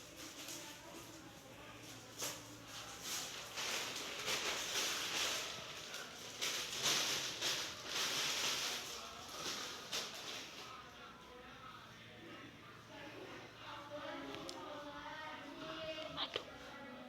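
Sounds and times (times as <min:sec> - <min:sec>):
rustling and shuffling: 0:00.0 - 0:10.9.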